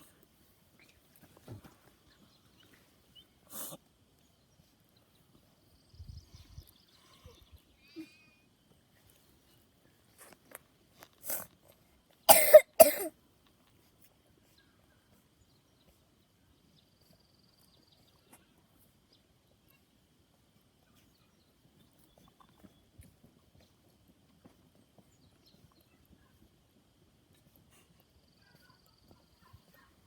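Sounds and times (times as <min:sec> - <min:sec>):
person coughing: 0:12.3 - 0:13.1.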